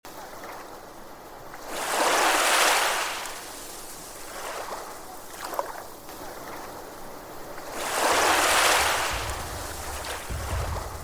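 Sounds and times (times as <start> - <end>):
faint rush of water: 0.1 - 11.0
wave washing in: 7.5 - 11.0.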